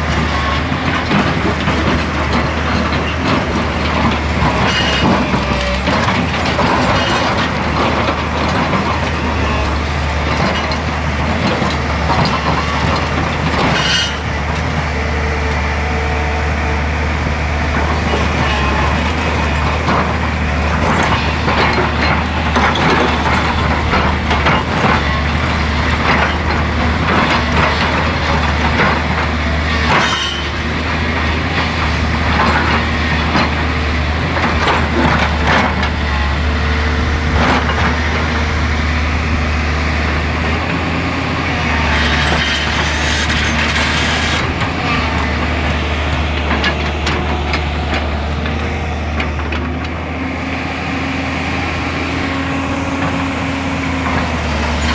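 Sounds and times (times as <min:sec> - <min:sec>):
excavator diesel engine running: 0:00.0 - 0:54.9
knocks and scraping: 0:40.4 - 0:50.0.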